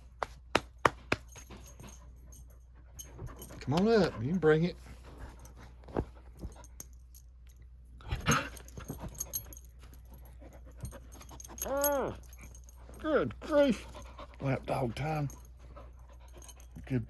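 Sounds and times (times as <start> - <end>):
dog tags jingling: 1.2 - 4.2, 6.4 - 17.0.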